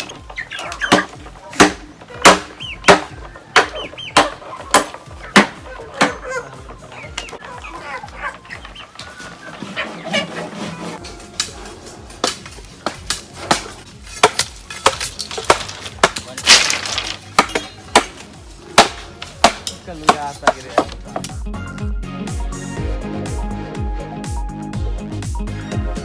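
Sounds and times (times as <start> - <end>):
sharp striking blows: 0.0 - 6.5, 11.2 - 21.0.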